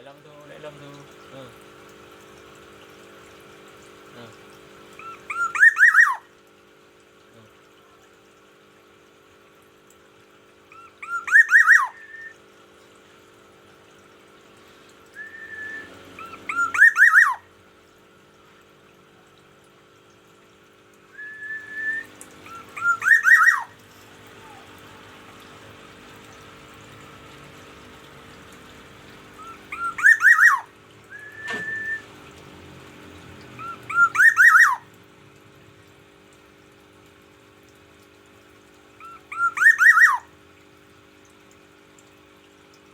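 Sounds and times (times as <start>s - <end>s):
bird whistled calls: 5.0s - 6.2s, 10.7s - 12.4s, 15.2s - 17.4s, 21.2s - 23.8s, 29.4s - 32.1s, 33.6s - 34.8s, 39.0s - 40.3s.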